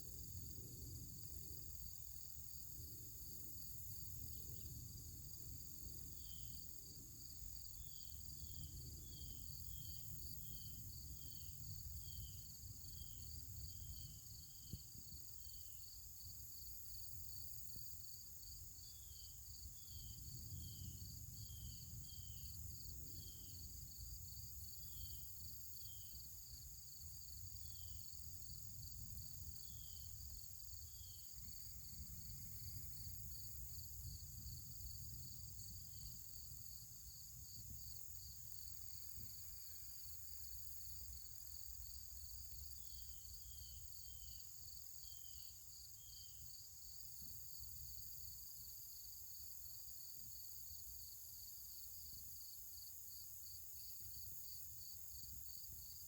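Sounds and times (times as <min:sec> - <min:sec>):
insect drone: 0:00.0 - 0:56.0.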